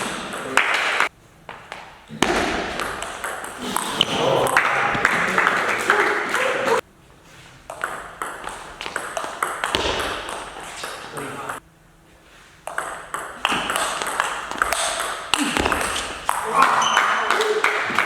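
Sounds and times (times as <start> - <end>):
ping pong ball clicking: 2.8 - 3.6, 7.7 - 11.6, 12.7 - 16.4.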